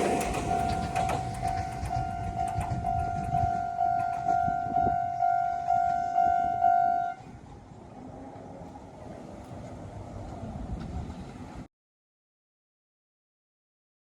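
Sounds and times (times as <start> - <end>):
level crossing warning bell: 0.0 - 7.2
train rumbling past: 0.0 - 11.7.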